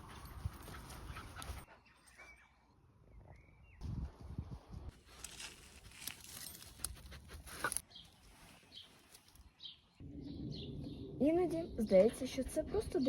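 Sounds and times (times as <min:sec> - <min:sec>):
small birds chirping: 0:00.6 - 0:04.0, 0:07.8 - 0:13.0
rustling: 0:05.0 - 0:09.5.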